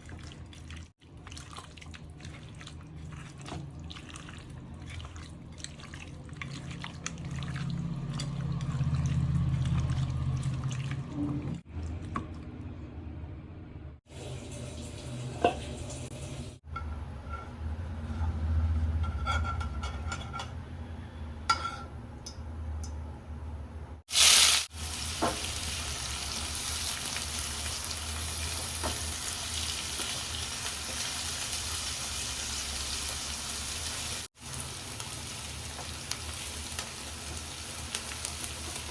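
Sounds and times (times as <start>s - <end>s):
food sizzling in a pan: 24.1s - 38.9s.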